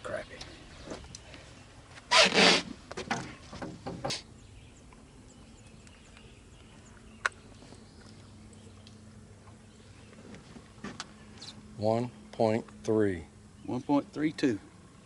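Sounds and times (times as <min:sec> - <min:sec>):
short knocks: 0:03.0 - 0:04.2.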